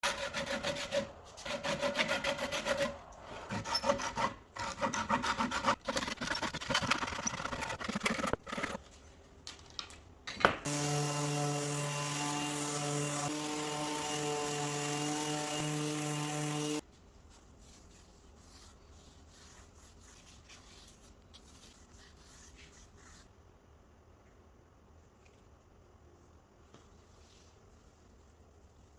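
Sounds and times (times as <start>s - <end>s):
wood rasping by hand: 0.0s - 8.8s, 10.7s - 16.8s
power tool motor running: 10.7s - 16.8s.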